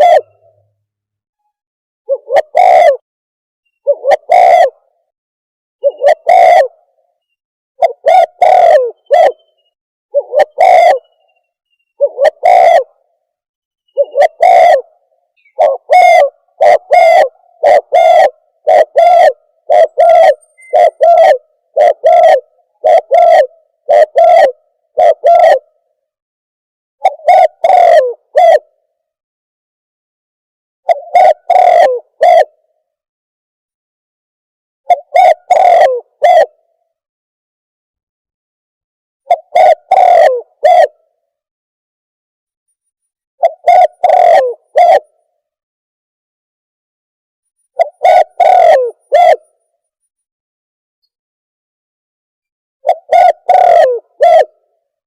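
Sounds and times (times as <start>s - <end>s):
bird lure call hooting coos: 0.0s - 0.8s, 2.1s - 3.0s, 3.7s - 5.1s, 5.8s - 26.0s, 27.0s - 28.9s, 30.8s - 32.8s, 34.8s - 36.9s, 39.2s - 41.2s, 43.4s - 45.4s, 47.6s - 49.8s, 52.8s - 54.9s.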